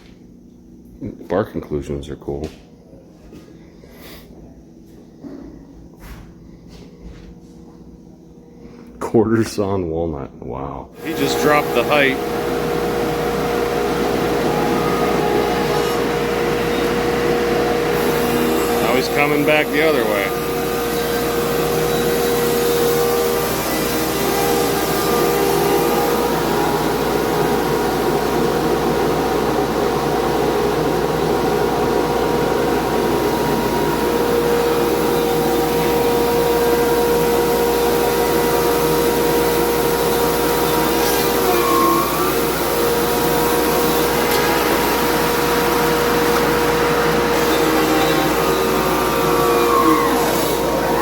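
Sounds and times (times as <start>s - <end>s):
sawmill mechanical whine: 10.9s - 51.0s.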